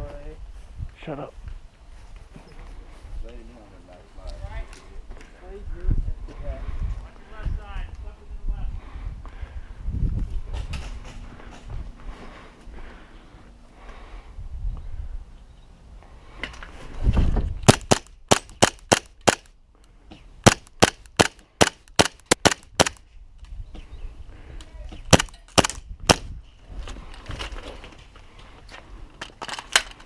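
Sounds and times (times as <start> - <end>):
airsoft guns firing: 17.7 - 19.5, 20.4 - 23.0, 25.1 - 26.3.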